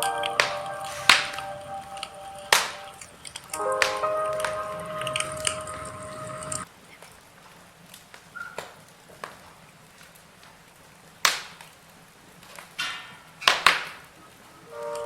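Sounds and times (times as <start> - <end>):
logs crackling in fireplace: 0.0 - 6.7.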